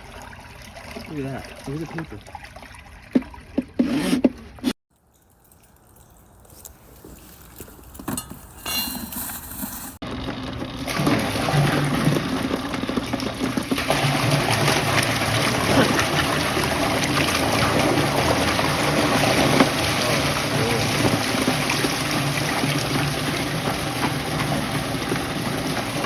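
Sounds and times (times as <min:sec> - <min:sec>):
wastewater rushing through pipe: 0:00.0 - 0:03.6, 0:10.0 - 0:26.0
low motor hum: 0:10.0 - 0:26.0.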